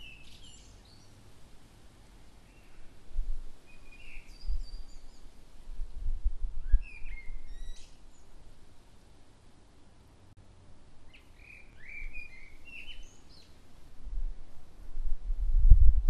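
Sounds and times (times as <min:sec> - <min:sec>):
birds chirping and calling: 0:00.0 - 0:01.2, 0:06.7 - 0:08.2, 0:11.1 - 0:13.6
outdoor background hiss: 0:00.0 - 0:16.0.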